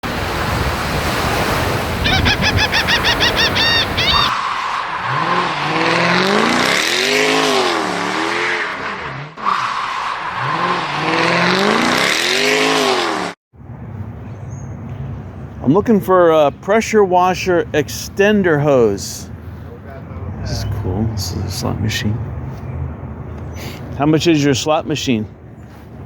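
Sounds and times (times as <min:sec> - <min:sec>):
quick high chirps: 0:02.0 - 0:04.3
car engine revving: 0:04.1 - 0:13.4.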